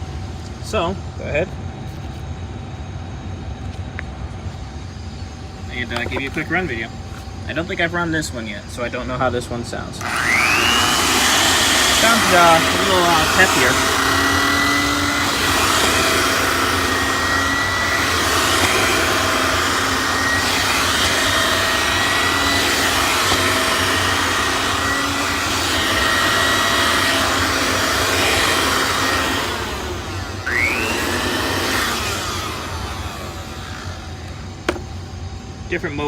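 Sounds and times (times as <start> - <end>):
vacuum cleaner running: 8.8 - 35.3.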